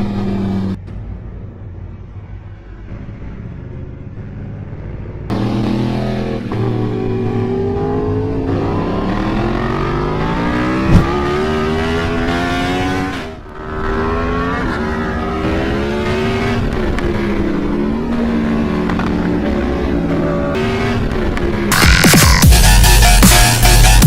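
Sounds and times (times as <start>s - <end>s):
motorcycle engine accelerating: 5.3s - 21.7s
sharp engine pop: 10.9s - 11.4s.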